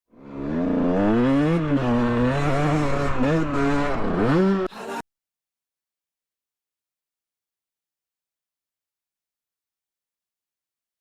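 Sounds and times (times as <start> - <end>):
motorcycle engine revving: 0.1 - 4.7.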